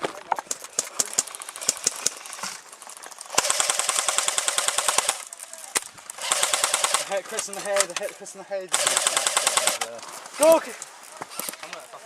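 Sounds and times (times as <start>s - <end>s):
airsoft gun automatic burst: 3.3s - 5.3s, 6.1s - 7.3s, 8.7s - 9.9s.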